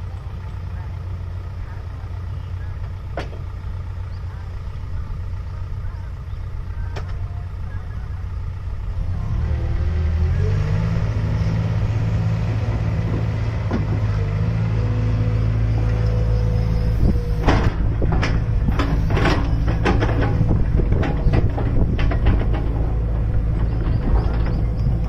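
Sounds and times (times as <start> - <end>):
excavator diesel engine running: 0.0 - 25.0
sharp knocks and clatter: 17.4 - 25.0.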